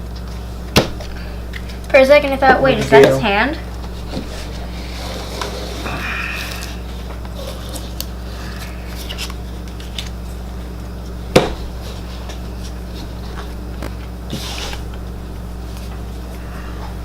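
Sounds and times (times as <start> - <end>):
steady low hum: 0.0 - 17.0
playing cards clicking and rustling: 5.3 - 16.4.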